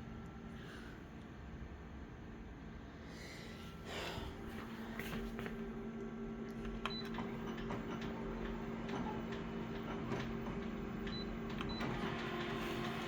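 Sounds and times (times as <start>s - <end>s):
photocopier humming: 3.0s - 13.0s.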